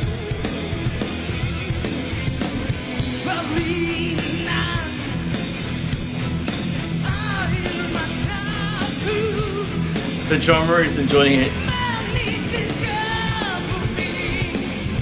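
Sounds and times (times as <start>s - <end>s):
rock band playing: 0.0s - 15.0s
man singing: 3.2s - 5.2s, 7.0s - 15.0s.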